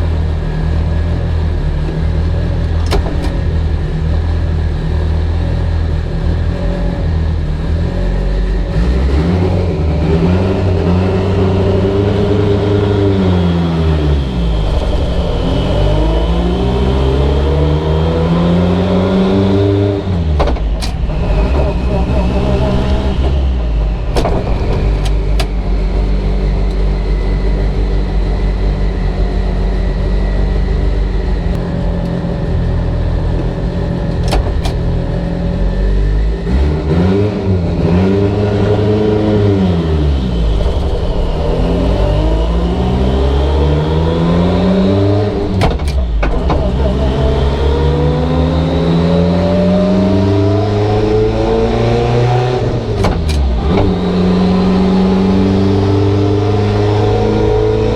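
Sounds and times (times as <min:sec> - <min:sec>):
car engine revving on a dyno: 0:00.0 - 0:57.9
gear shift clunk: 0:02.7 - 0:04.3, 0:20.2 - 0:25.6, 0:33.3 - 0:35.4, 0:45.3 - 0:46.9, 0:52.8 - 0:54.2.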